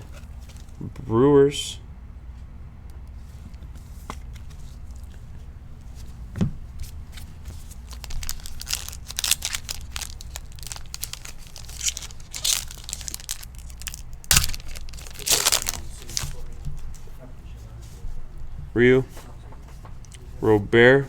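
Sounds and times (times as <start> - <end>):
card pack wrapper tearing: 7.8 - 16.4.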